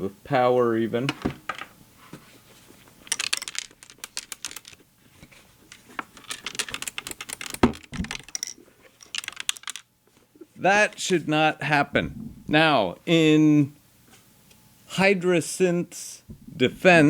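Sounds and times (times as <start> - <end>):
loose screw rattling: 3.1 - 4.8, 5.7 - 9.8
low thump: 12.0 - 12.5.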